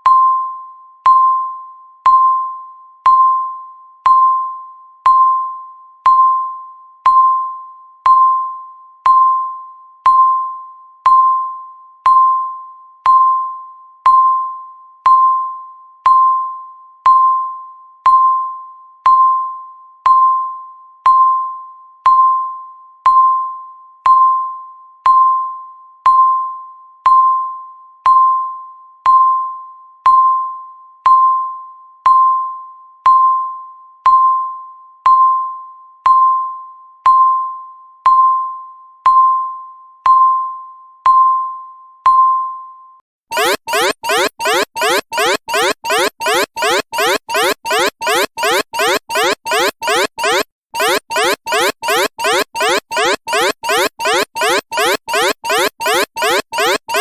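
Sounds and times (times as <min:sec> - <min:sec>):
timer ringing ping: 0:43.3 - 0:57.0.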